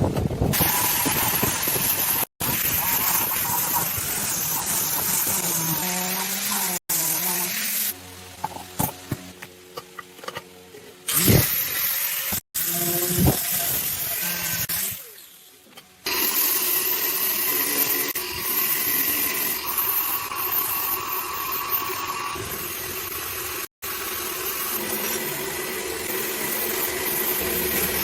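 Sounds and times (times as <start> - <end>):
power tool hissing: 0.5 - 8.0, 11.1 - 15.3, 16.0 - 28.0.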